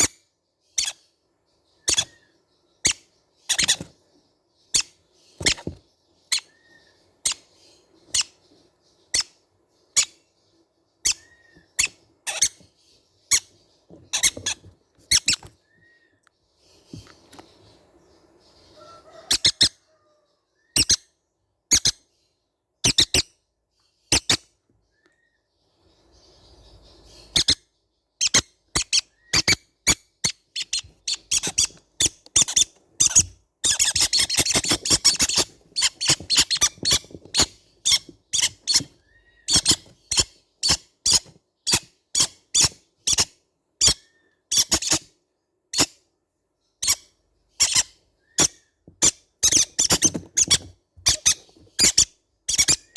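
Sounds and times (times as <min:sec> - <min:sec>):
baby parrots squeaking: 0:00.0 - 0:01.1, 0:01.8 - 0:04.0, 0:04.6 - 0:10.3, 0:11.0 - 0:16.0, 0:18.7 - 0:20.1, 0:20.7 - 0:21.1, 0:21.7 - 0:22.0, 0:22.8 - 0:23.4, 0:24.1 - 0:24.5, 0:26.2 - 0:45.1, 0:45.7 - 0:46.0, 0:46.8 - 0:52.9.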